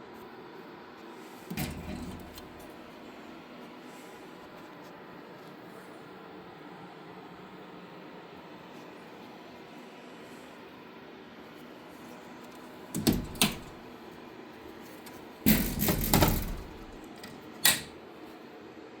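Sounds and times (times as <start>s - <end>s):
sharp clicks and knocks: 13.0s - 13.8s, 15.0s - 18.0s.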